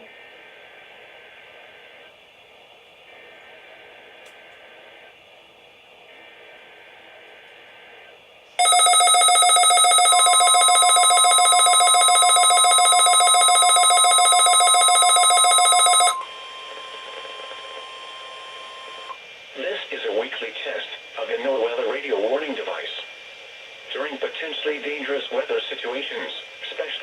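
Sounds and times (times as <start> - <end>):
pulsing electronic alert beep: 8.6 - 16.3
two-tone data warble: 8.6 - 19.2.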